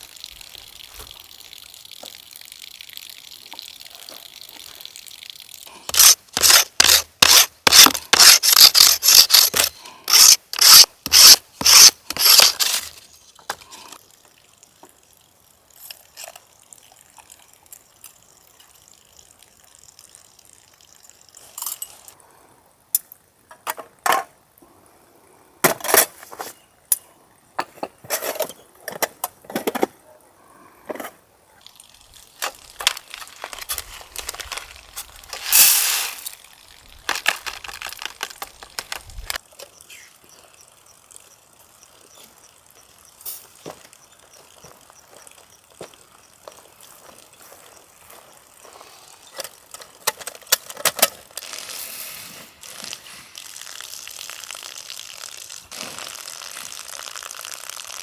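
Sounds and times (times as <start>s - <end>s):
things being handled: 5.9s - 14.0s, 32.2s - 39.4s, 49.2s - 51.9s
steady hiss: 31.8s - 50.4s, 51.0s - 58.0s.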